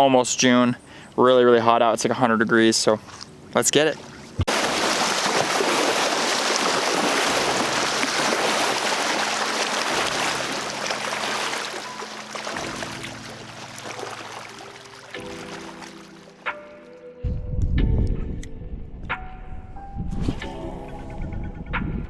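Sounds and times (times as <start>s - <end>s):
river water rushing: 4.5s - 16.4s
background music sustained tones: 7.2s - 22.0s.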